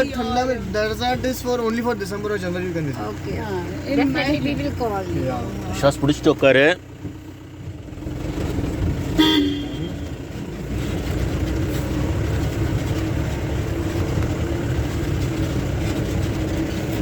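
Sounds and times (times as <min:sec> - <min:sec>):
jeep engine running under load: 0:00.0 - 0:17.0
short horn toot: 0:09.1 - 0:10.1.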